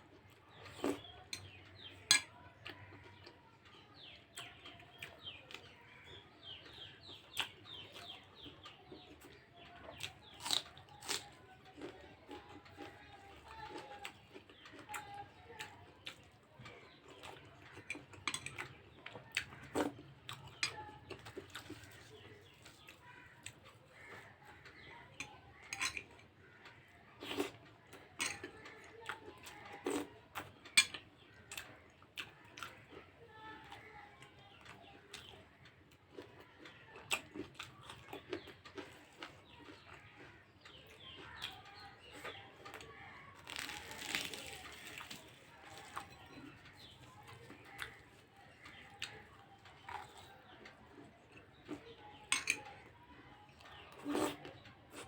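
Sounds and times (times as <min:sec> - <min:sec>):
cutlery clinking on a plate: 0:02.1 - 0:02.3, 0:25.7 - 0:26.1, 0:52.3 - 0:52.6.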